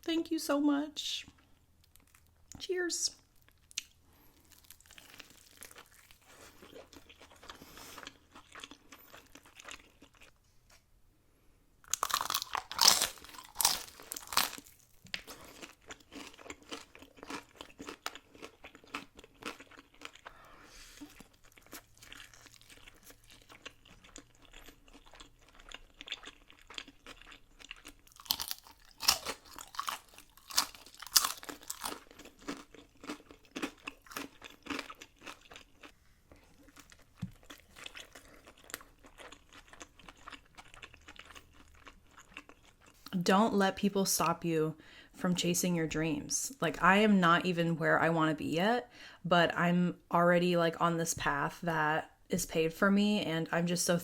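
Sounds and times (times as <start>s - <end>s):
crunchy food being chewed: 1.4s - 2.4s, 3.3s - 10.8s, 11.8s - 43.2s.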